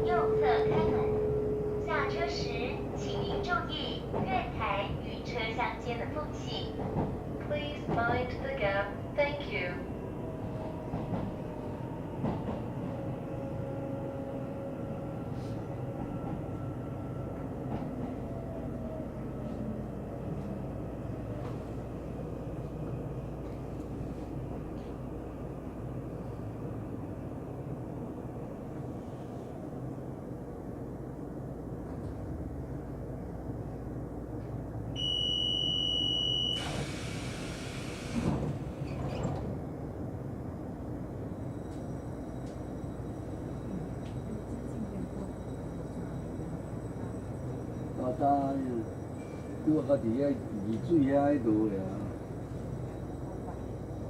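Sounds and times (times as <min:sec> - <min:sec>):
train rumble inside carriage: 0:00.0 - 0:54.0
train door warning buzzer: 0:35.0 - 0:38.2.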